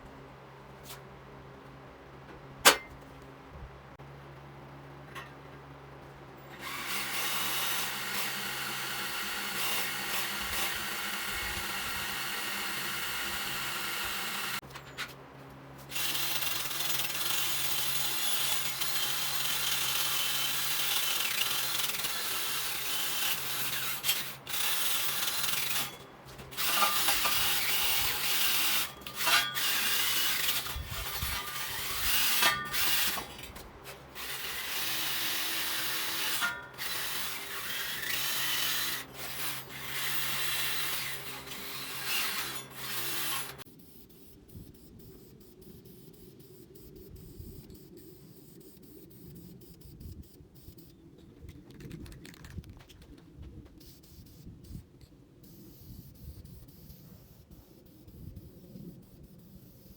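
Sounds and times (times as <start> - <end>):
power tool running: 6.5 - 14.7, 15.8 - 43.6.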